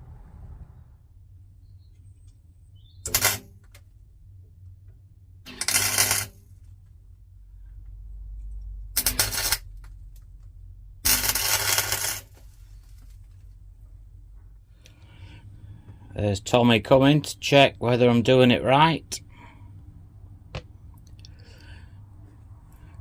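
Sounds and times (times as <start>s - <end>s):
low steady hum: 0.0s - 23.0s
crackling weld bursts: 3.0s - 3.6s, 5.5s - 6.5s, 8.9s - 9.8s, 11.0s - 12.5s.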